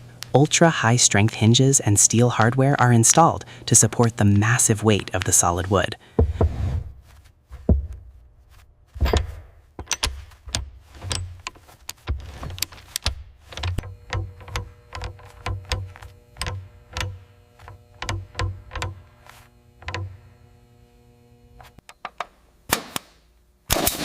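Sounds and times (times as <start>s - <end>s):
door hardware clicks and thuds: 9.0s - 17.2s.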